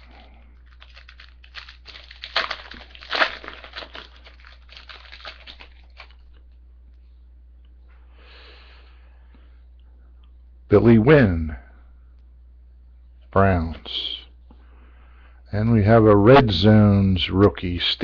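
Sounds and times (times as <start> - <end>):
wrapper being torn and crinkled: 0.0 - 6.6.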